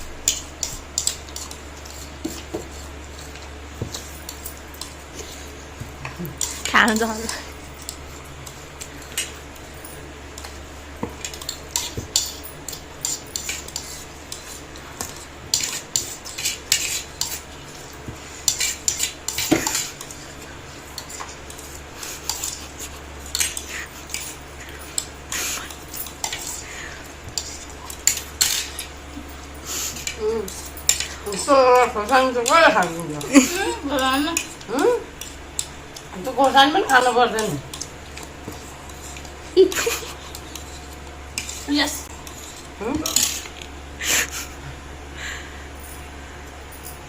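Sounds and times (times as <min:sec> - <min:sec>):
cutlery scraping and clinking on plates: 0:10.4 - 0:35.8, 0:36.4 - 0:43.6.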